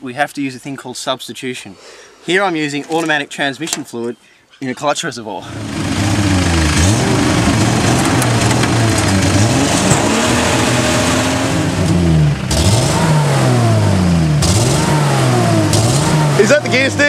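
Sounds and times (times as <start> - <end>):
car engine revving hard: 5.5 - 17.0.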